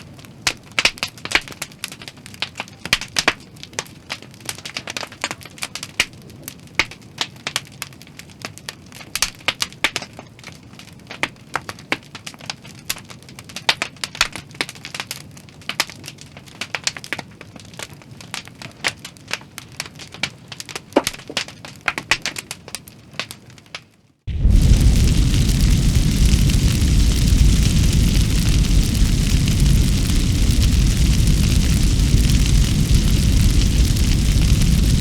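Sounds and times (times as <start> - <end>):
crackling and sharp clicks: 24.3 - 35.0.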